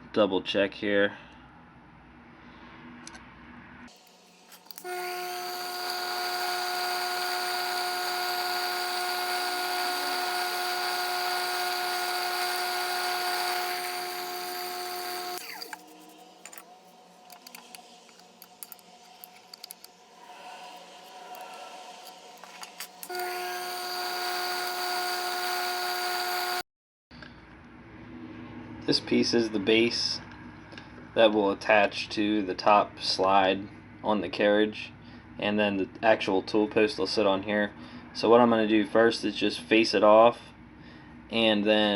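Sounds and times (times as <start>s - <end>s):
mill motor whining: 4.5s - 16.0s, 20.6s - 26.6s.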